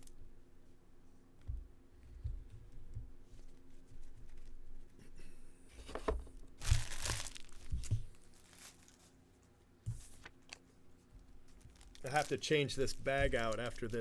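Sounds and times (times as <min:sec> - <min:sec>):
wrapper tearing and crinkling: 0:06.6 - 0:09.2, 0:11.5 - 0:14.0.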